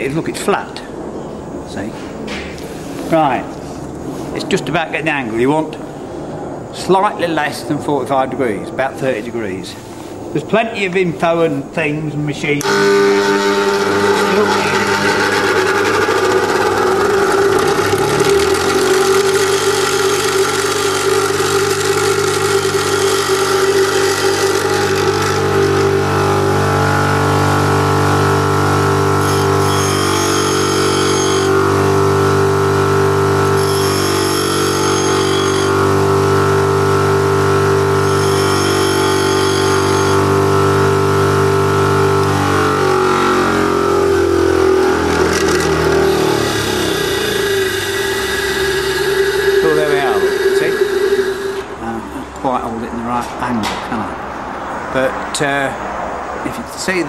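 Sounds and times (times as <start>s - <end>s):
bench grinder motor humming: 12.6s - 51.9s
high-pitched grinding of drill bit: 12.6s - 51.9s.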